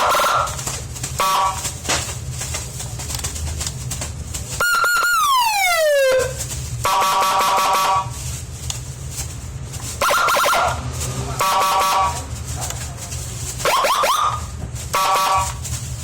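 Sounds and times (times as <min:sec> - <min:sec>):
multi-tone horn blast: 0:01.2 - 0:01.7, 0:05.8 - 0:08.2, 0:10.0 - 0:12.4, 0:13.6 - 0:15.6
electronic siren wail: 0:04.6 - 0:08.0, 0:10.0 - 0:10.7, 0:13.6 - 0:14.4.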